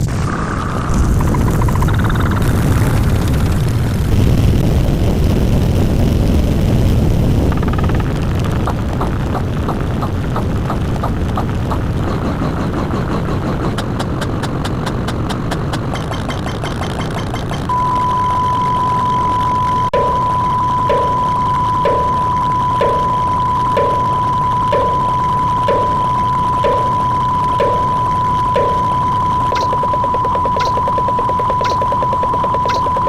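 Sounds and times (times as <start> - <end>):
fast sharp clicks: 7.5 - 17.7, 20.9 - 33.0
regular clicks: 13.1 - 17.7, 20.9 - 33.0
steady high beep: 16.0 - 33.0.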